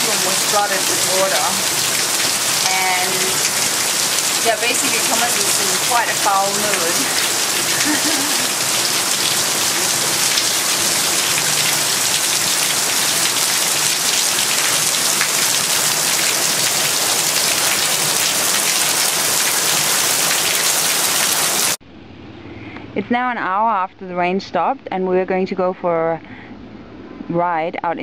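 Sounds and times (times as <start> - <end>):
heavy rain hissing: 0.0 - 21.8.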